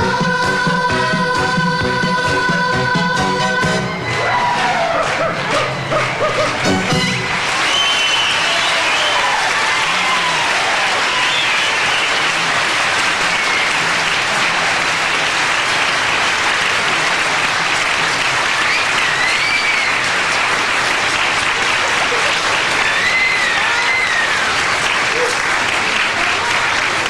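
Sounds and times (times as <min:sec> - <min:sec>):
high rising and falling cries: 0:00.1 - 0:06.6
audience applauding: 0:03.0 - 0:27.0.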